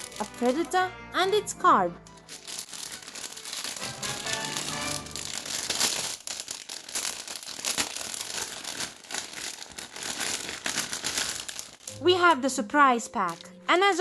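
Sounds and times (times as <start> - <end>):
packaging tearing and crinkling: 0.0 - 0.7, 2.2 - 12.0.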